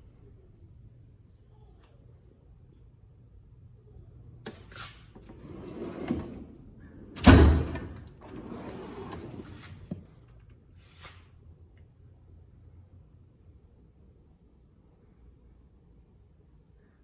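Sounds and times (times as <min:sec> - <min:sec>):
tool box drawers sliding: 0:05.2 - 0:10.0
drawer closing thud: 0:07.1 - 0:09.9.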